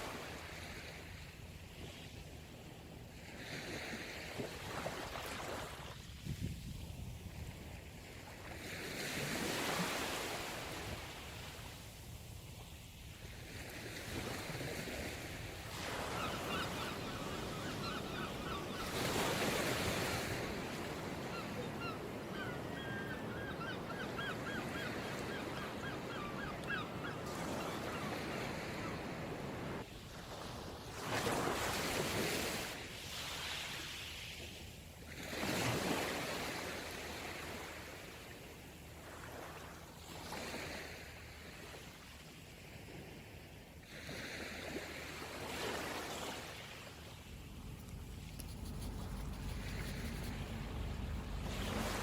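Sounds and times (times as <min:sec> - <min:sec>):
sea waves washing onto shore: 0:44.0 - 0:52.0
quick repeated bird calls: 0:47.8 - 0:52.0.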